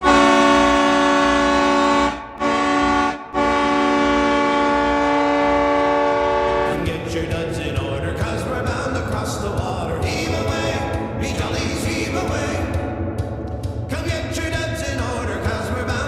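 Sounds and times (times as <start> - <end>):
air horn multi-tone chord: 0.0 - 7.0
goal song music: 0.0 - 16.0.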